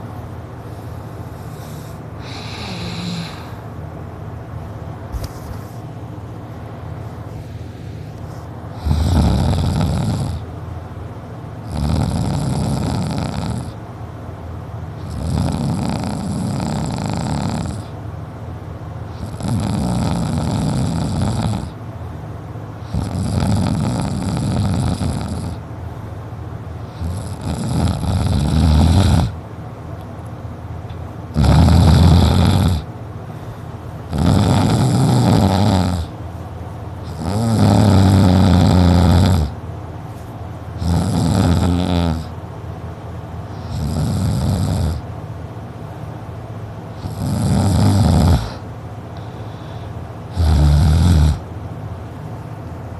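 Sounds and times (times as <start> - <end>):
person snoring loudly: 2.2 - 3.6, 8.7 - 10.4, 11.6 - 13.8, 15.0 - 17.9, 19.1 - 21.8, 22.8 - 25.6, 26.9 - 29.4, 31.4 - 32.9, 34.1 - 36.1, 37.1 - 39.6, 40.8 - 42.3, 43.6 - 45.0, 47.0 - 48.6, 50.3 - 51.4.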